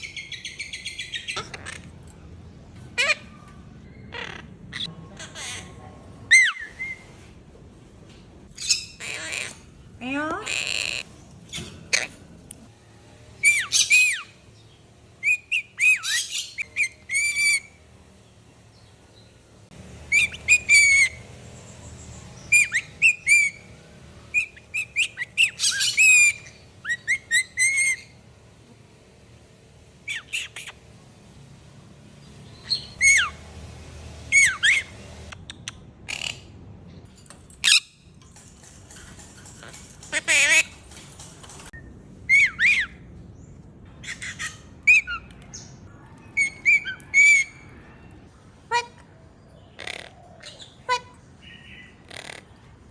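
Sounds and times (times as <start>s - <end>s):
pet bird squawking and chirping: 0.0s - 2.0s, 3.0s - 7.0s, 8.6s - 12.2s, 13.4s - 14.4s, 15.2s - 17.8s, 20.1s - 21.2s, 22.4s - 23.7s, 24.3s - 28.2s, 30.0s - 30.8s, 39.5s - 41.0s, 42.3s - 43.1s, 44.0s - 52.7s.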